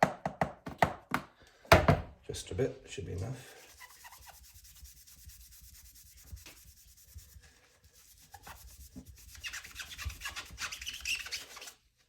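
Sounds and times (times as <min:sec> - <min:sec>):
sponge scrubbing knife blade: 0:03.5 - 0:11.8.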